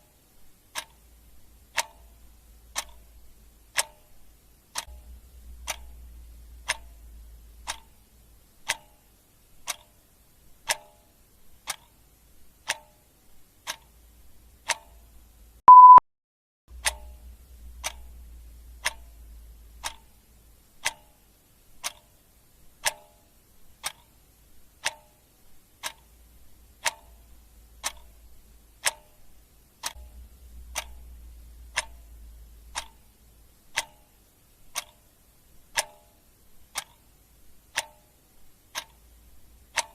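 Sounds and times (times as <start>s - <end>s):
clock ticking: 0.0s - 16.0s, 16.7s - 39.9s
short loud beep: 15.7s - 16.0s.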